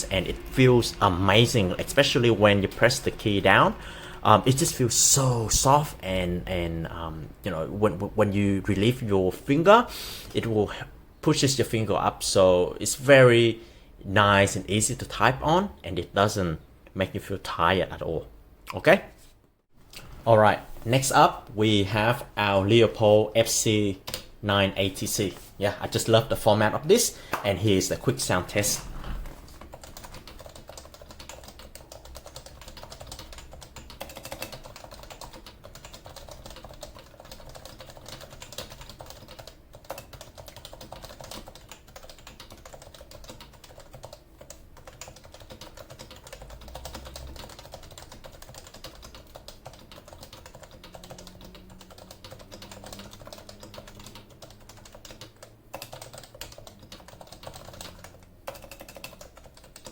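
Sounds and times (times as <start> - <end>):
fast typing on keyboard: 29.6 - 59.9.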